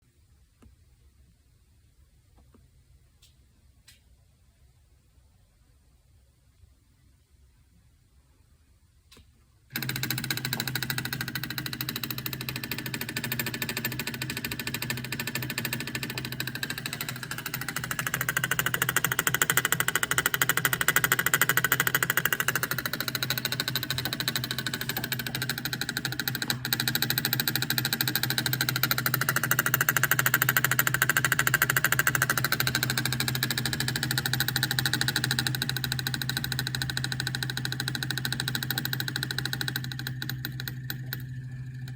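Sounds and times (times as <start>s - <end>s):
engine idling: 9.7s - 41.9s.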